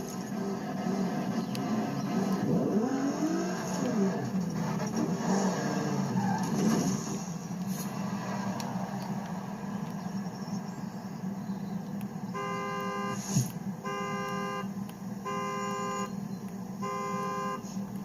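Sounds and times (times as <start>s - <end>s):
car engine idling: 0.0s - 18.0s
car horn blasts: 12.3s - 16.2s, 16.8s - 17.8s.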